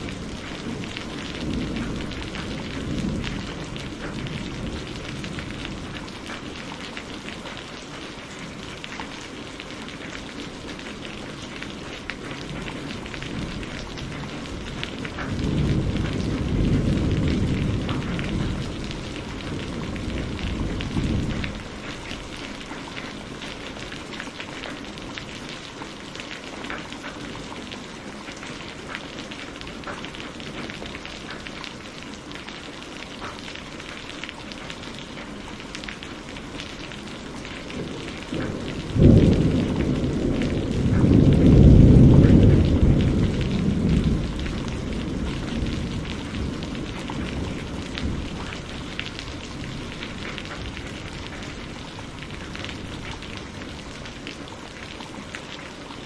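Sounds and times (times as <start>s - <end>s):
thunderclap and rumble: 0.0s - 55.6s
steady rain falling: 0.0s - 56.0s.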